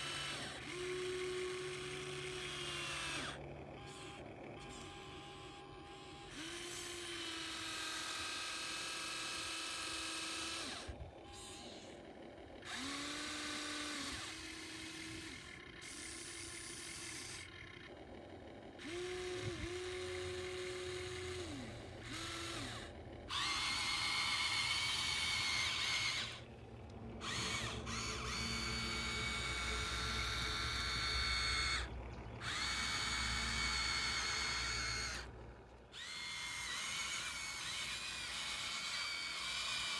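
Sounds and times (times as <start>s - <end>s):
electric motors whining: 0.0s - 39.9s.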